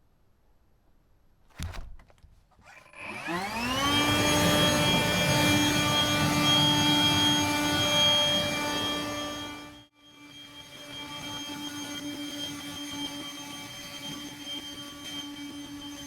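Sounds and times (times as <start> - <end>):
electric motor whining: 2.7 - 9.9.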